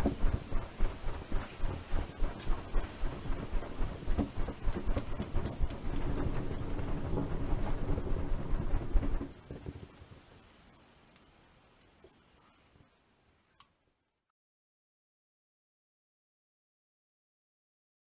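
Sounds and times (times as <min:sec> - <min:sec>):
heavy low rumble: 0:00.0 - 0:09.3
wood fire crackling and popping: 0:00.0 - 0:12.6.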